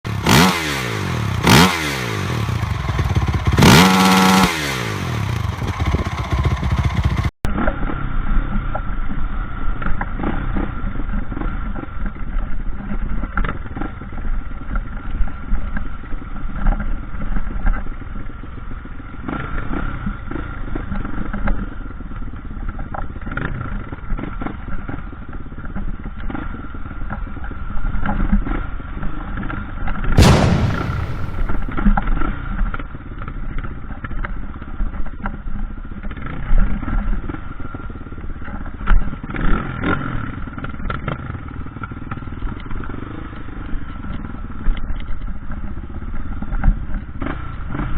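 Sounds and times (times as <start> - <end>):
motorcycle engine revving: 0.1 - 7.3.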